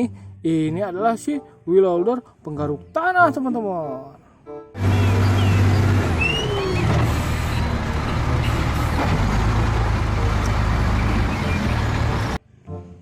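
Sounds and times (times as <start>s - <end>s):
faint whistling glides: 4.8s - 8.0s
diesel engine humming: 4.8s - 12.4s.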